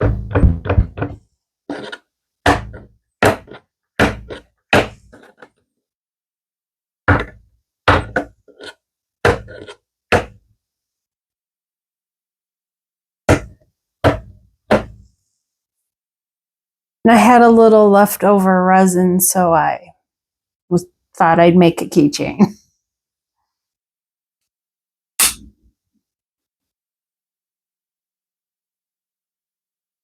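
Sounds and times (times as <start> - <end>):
mold knocking on work surface: 0.0 - 1.2, 2.5 - 5.4, 13.3 - 15.0.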